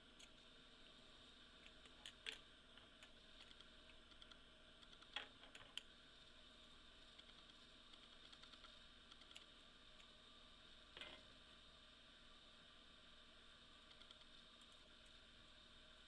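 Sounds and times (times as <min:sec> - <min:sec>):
faint steady hum: 0:00.0 - 0:16.0
small clicks and taps: 0:01.6 - 0:05.9, 0:07.2 - 0:10.1, 0:13.8 - 0:14.8.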